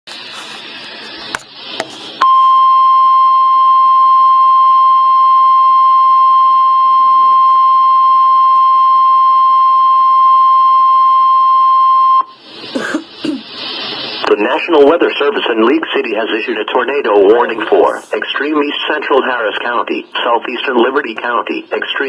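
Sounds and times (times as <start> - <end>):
radio hiss: 0.1 - 2.2, 12.2 - 22.0
loud steady high beep: 2.2 - 12.4.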